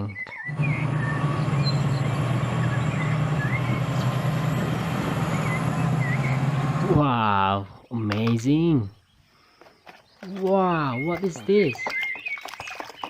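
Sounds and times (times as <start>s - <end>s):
toy tank engine rumble: 0.5s - 7.0s.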